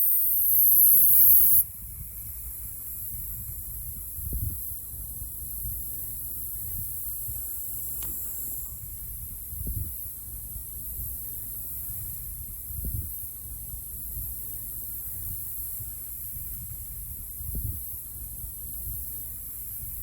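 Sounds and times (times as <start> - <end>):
cicada buzzing: 0.0 - 1.7
wind rumble on microphone: 1.6 - 20.0.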